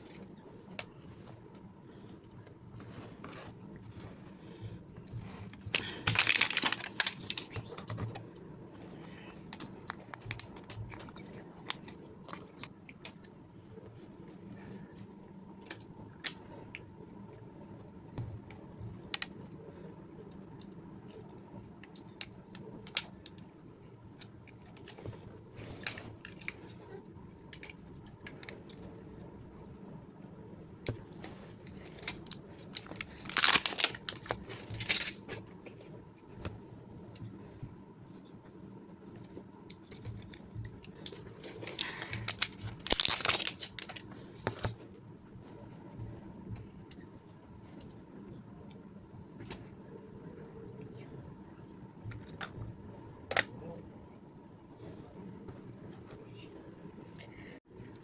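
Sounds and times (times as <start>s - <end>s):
packaging crinkling and tearing: 5.5s - 8.0s, 9.5s - 13.2s, 31.7s - 35.5s, 39.8s - 44.8s.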